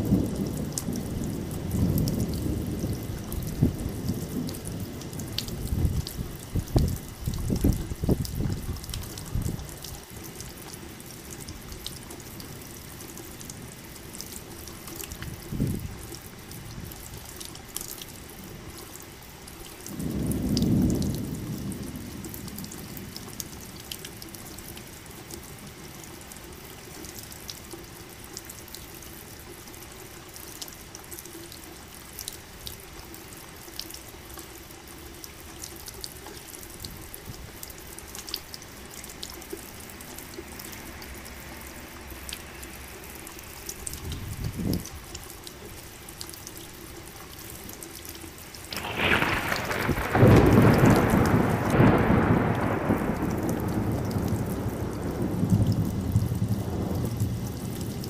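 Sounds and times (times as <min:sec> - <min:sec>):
thunder rumbling: 0:00.0 - 0:09.8, 0:19.9 - 0:23.3, 0:48.7 - 0:58.0
steady rain: 0:00.0 - 0:58.0
water dripping: 0:00.0 - 0:58.0.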